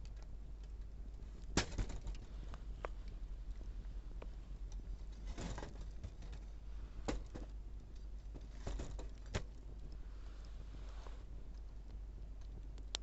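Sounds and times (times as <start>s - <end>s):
campfire crackling and popping: 0.0s - 5.2s, 9.1s - 13.0s
low rumble: 0.0s - 8.4s.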